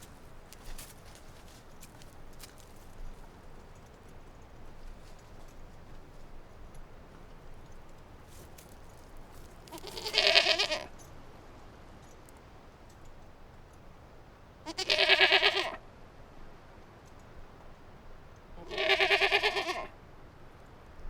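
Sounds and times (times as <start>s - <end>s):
sheep bleating: 9.7s - 10.9s, 14.6s - 15.8s, 18.6s - 19.9s.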